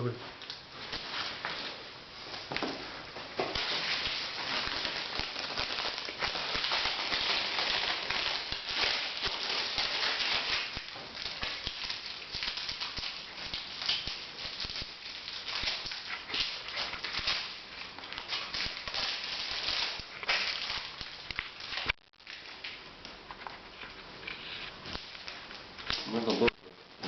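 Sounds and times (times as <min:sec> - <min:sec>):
wood fire crackling: 0:00.0 - 0:27.0.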